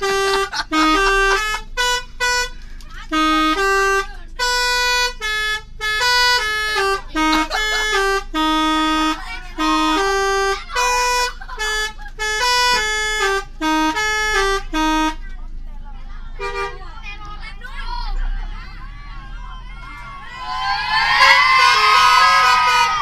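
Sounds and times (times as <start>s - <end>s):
musical air horns playing a tune: 0.0s - 15.2s, 16.4s - 16.8s, 21.0s - 23.0s.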